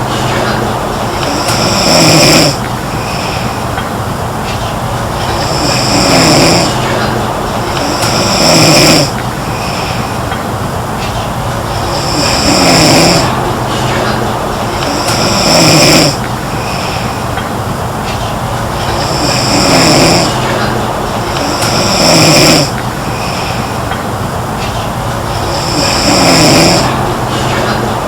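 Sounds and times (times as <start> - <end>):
girl snoring: 1.2 - 3.4, 5.2 - 9.9, 11.6 - 17.0, 18.9 - 23.6, 25.2 - 28.0.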